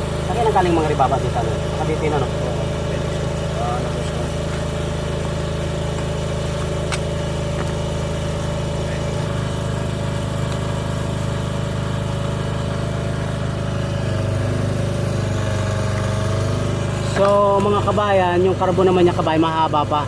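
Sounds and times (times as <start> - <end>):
engine idling: 0.0 - 20.0.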